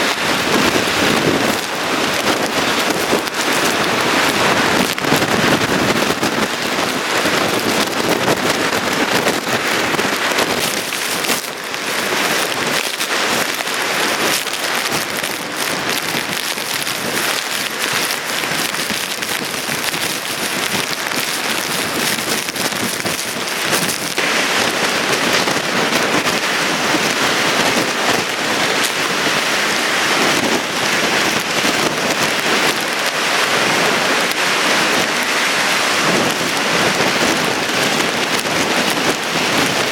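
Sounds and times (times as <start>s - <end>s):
heavy driving rain: 0.0s - 39.9s
hurricane wind: 0.0s - 39.9s.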